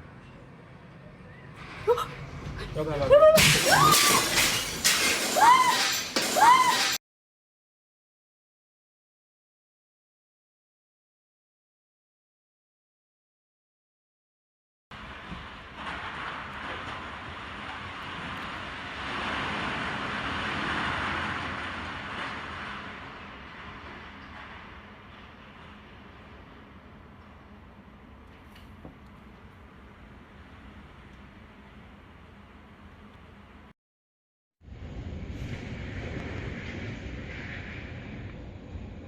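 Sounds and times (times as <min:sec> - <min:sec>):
strong wind gust roaring: 0:34.6 - 0:39.0.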